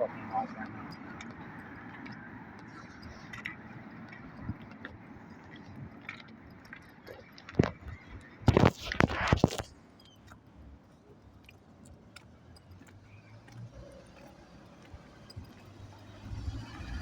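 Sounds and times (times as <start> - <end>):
rustling and scraping: 5.4 - 9.8.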